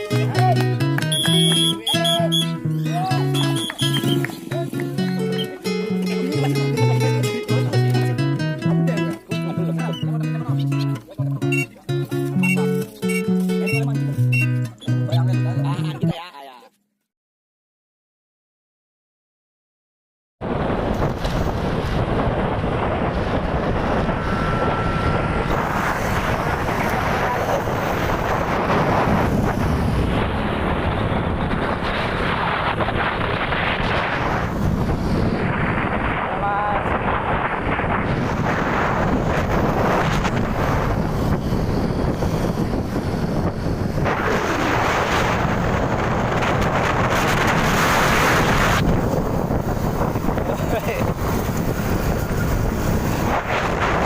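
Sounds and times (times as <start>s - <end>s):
wind buffeting microphone: 20.4s - 54.0s.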